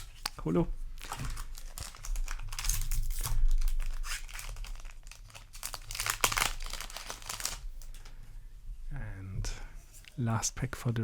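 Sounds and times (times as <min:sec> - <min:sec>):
foil wrapper crinkling and tearing: 0:00.0 - 0:08.0.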